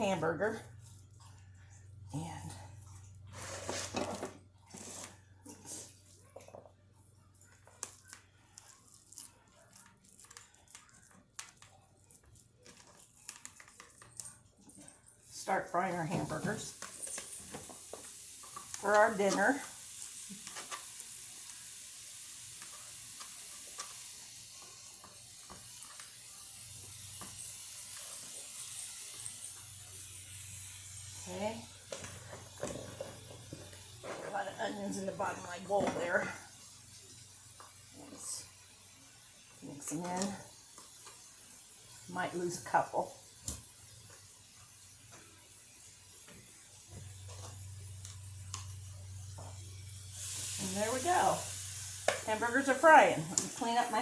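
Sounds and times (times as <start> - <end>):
patties sizzling in a frying pan: 15.4 - 54.0
faint hiss: 34.2 - 54.0.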